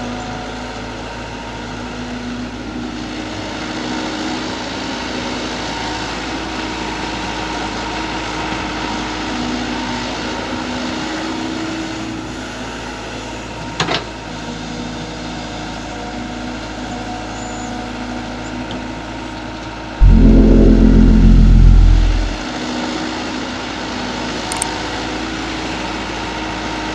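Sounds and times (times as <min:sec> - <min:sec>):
loud low droning: 0:20.0 - 0:22.4.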